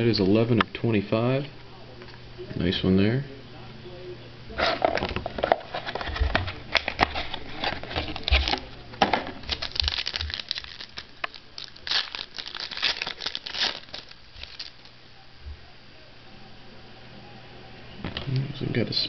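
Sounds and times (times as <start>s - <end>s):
card packs crinkling and rustling: 4.6s - 15.0s.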